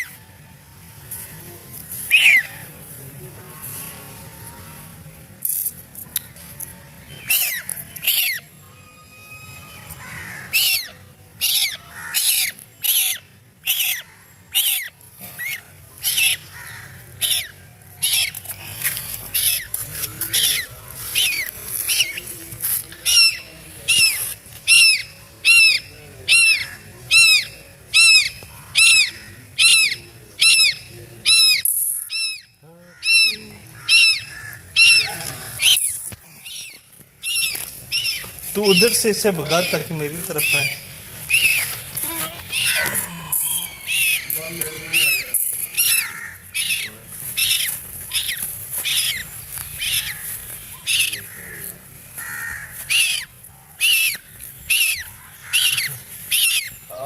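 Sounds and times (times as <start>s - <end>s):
duckling peeping in distress: 17.2s - 18.6s, 19.2s - 22.3s, 23.0s - 51.4s, 52.2s - 57.0s.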